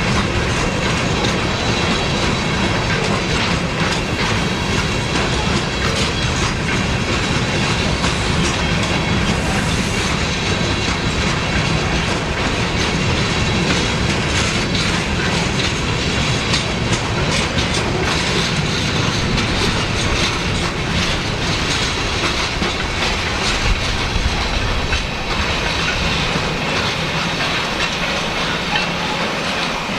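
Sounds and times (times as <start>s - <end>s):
freight train rumble: 0.0s - 29.9s
wheels clacking over rail joints: 0.0s - 29.9s
high wheel squeal: 25.1s - 29.9s.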